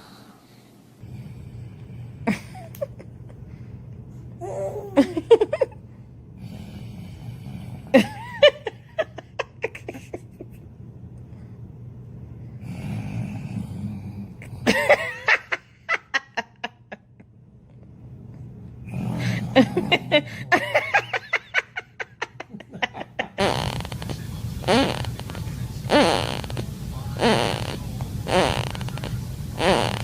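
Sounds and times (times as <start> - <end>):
person laughing: 2.3 - 3.5, 4.4 - 5.8, 8.0 - 10.7, 14.6 - 17.1, 19.4 - 23.8
baby snoring: 23.6 - 30.0.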